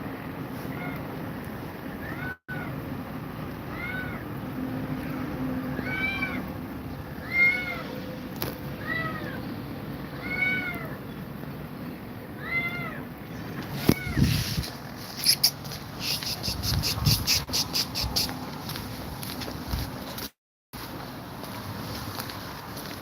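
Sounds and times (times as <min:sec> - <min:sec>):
cat meowing: 0:02.0 - 0:02.7, 0:03.7 - 0:04.2, 0:05.8 - 0:06.5, 0:07.2 - 0:07.9, 0:08.8 - 0:09.4, 0:10.1 - 0:11.0, 0:12.4 - 0:13.0.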